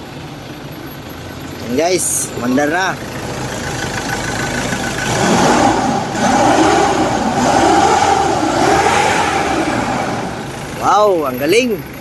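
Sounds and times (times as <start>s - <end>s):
diesel engine revving: 1.3s - 12.0s.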